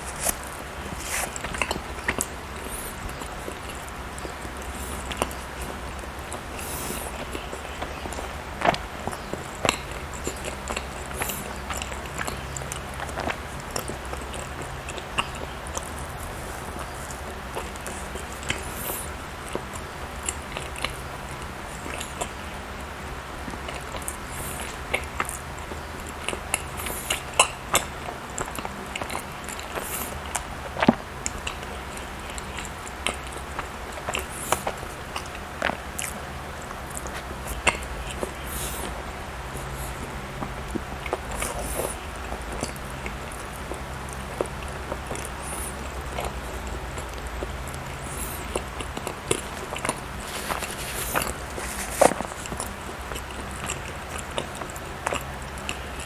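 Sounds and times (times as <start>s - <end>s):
person biting and chewing: 0.0s - 3.9s, 39.6s - 56.0s
mouth clicks and smacks: 0.0s - 56.0s
person chewing soft food: 0.0s - 56.0s.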